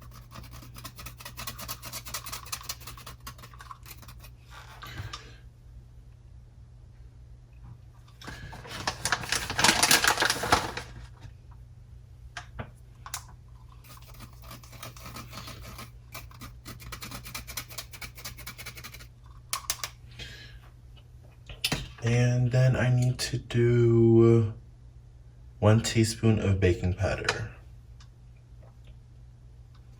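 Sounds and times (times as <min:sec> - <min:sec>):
flour sifter clicking and rasping: 0:00.0 - 0:05.0, 0:08.4 - 0:10.9, 0:13.8 - 0:19.9.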